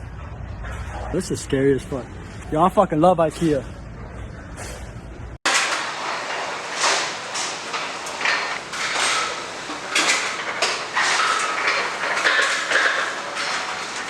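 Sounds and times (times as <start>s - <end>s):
room noise: 0.0s - 14.0s
clatter of knocks and rattles: 5.5s - 14.0s.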